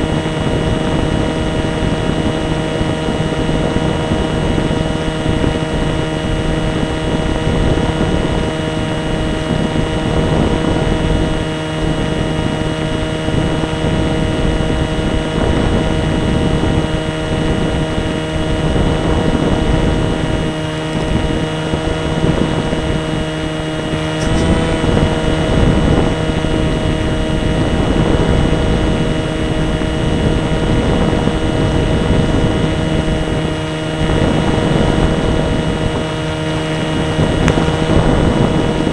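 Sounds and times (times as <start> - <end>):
model airplane motor and propeller: 0.0 - 38.9
wind rushing over microphone: 0.0 - 38.9
brief click: 24.0 - 25.2.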